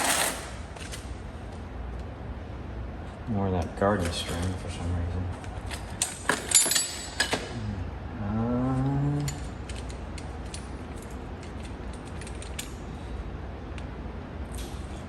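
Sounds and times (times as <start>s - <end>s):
metal tools clinking: 5.6s - 7.6s.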